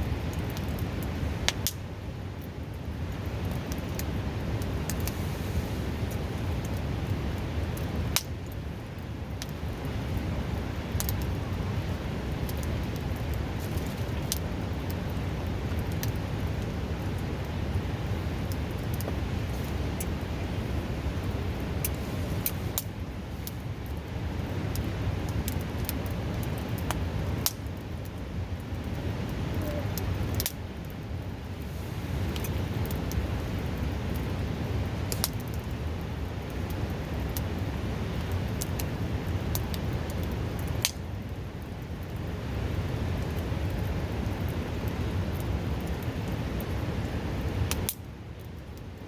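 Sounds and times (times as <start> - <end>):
wood fire crackling and popping: 0.0 - 49.0
river rushing: 4.1 - 8.2, 9.9 - 27.6, 28.3 - 35.6.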